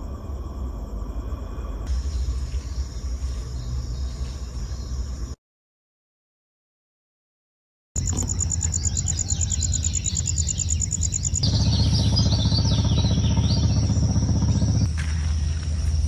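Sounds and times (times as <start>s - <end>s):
crickets trilling: 0.0s - 5.4s, 8.0s - 16.0s
insect chirps: 0.0s - 5.4s, 8.0s - 16.0s
deeper hum: 8.0s - 16.0s
low rumble: 10.2s - 16.0s.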